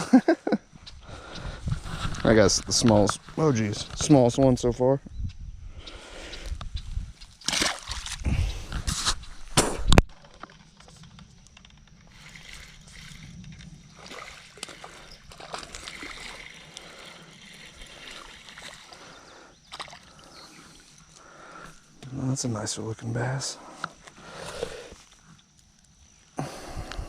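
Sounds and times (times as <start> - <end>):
faint outdoor background: 0.0 - 27.0
water splashing and sloshing: 7.2 - 8.4, 11.7 - 21.8.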